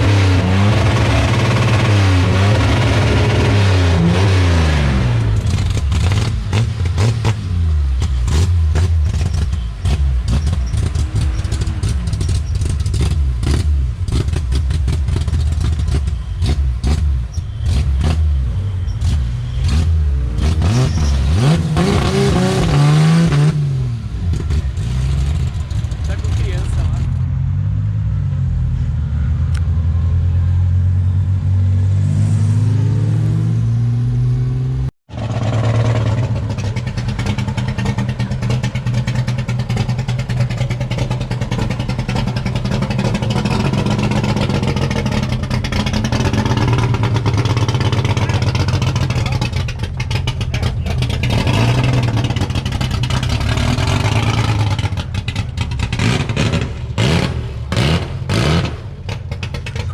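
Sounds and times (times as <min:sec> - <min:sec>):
rough pulsing car exhaust: 0:00.0 - 0:32.4, 0:33.1 - 0:59.9
car engine running: 0:35.1 - 0:59.9.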